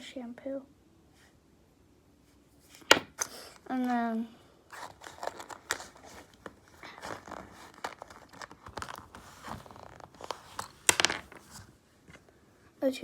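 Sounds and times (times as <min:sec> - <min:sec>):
bag rustling: 0:04.6 - 0:11.7
plastic items clicking and scraping: 0:04.7 - 0:12.3.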